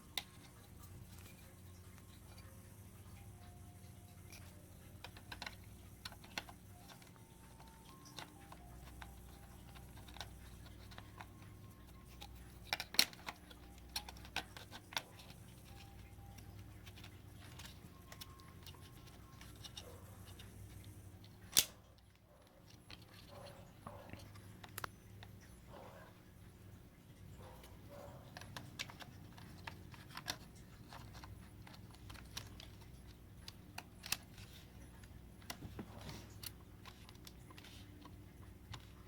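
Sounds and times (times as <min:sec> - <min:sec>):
sharper clicks: 0:21.5 - 0:21.8
light clicks and taps of laptop: 0:27.6 - 0:39.0.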